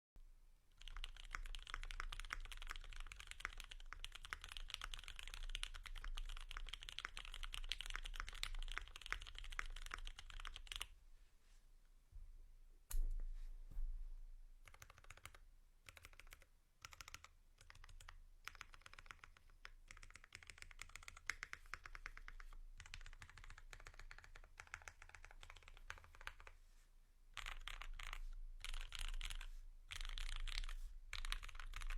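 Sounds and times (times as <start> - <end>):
typing on mechanical keyboard: 0.8 - 10.9, 14.6 - 26.5, 27.4 - 31.9.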